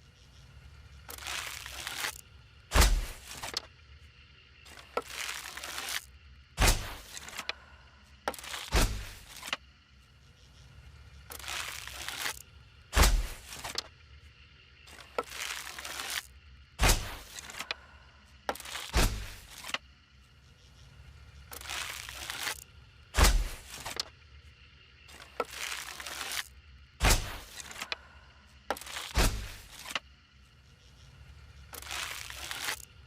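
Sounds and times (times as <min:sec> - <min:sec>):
arrow shot crack and thud: 0:02.7 - 0:03.2, 0:06.6 - 0:07.1, 0:08.7 - 0:09.2, 0:12.9 - 0:13.4, 0:16.8 - 0:17.3, 0:18.9 - 0:19.4, 0:23.2 - 0:23.6, 0:27.0 - 0:27.5, 0:29.1 - 0:29.6.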